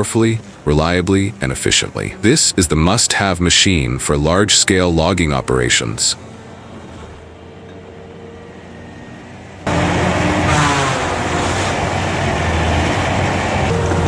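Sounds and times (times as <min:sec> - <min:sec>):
heavy machine engine running: 0:00.0 - 0:05.6, 0:06.2 - 0:14.0
loud machinery noise: 0:00.0 - 0:14.0
rising whine: 0:07.0 - 0:14.0.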